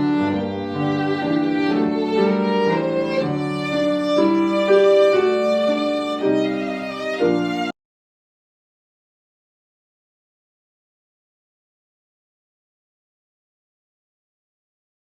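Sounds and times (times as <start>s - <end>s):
slow bowed violin melody: 0.0s - 7.8s.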